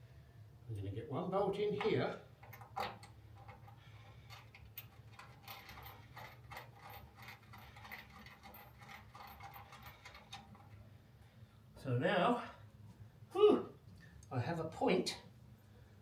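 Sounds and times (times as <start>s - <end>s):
faint metal clicks and ticks: 1.8s - 10.9s.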